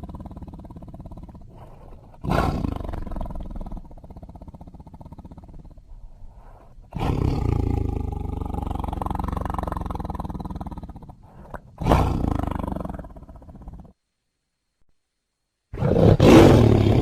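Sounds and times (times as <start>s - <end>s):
tiger growling: 0.0s - 14.0s, 15.7s - 17.0s
tiger roaring: 0.0s - 14.0s, 15.8s - 17.0s.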